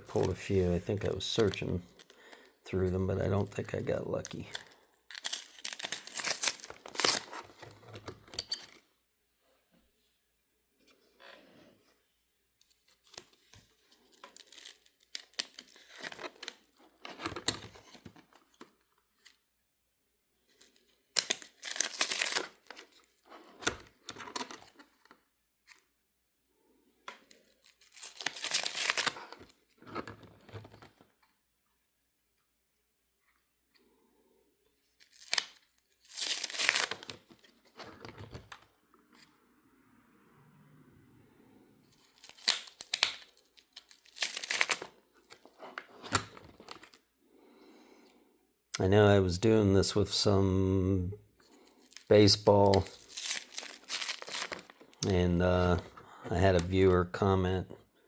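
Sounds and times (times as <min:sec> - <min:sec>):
trading cards rustling: 0:00.0 - 0:08.8, 0:12.6 - 0:18.6, 0:20.5 - 0:24.9, 0:27.2 - 0:31.0, 0:34.9 - 0:39.3, 0:41.9 - 0:47.0, 0:49.4 - 0:57.6.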